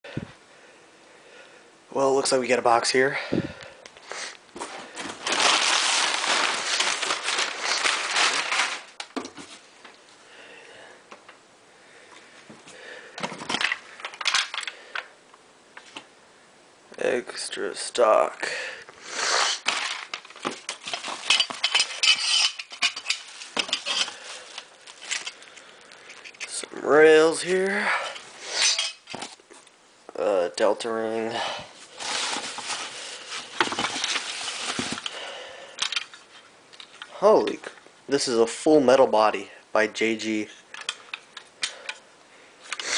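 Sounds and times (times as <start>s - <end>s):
packaging crinkling: 4.6s - 9.6s, 19.4s - 26.6s, 31.8s - 36.2s
plastic parts clicking and clinking: 13.2s - 15.1s, 19.6s - 25.4s, 35.8s - 37.6s, 40.7s - 42.0s.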